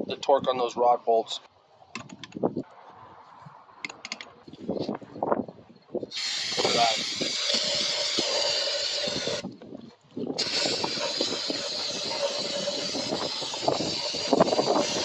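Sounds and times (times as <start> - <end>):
hissing spray: 6.1 - 9.5, 10.4 - 15.0.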